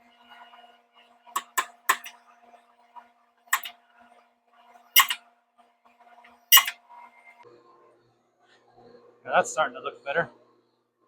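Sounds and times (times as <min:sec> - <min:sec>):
sharp metal clanks: 0:01.4 - 0:02.1, 0:05.0 - 0:05.2, 0:06.5 - 0:06.8.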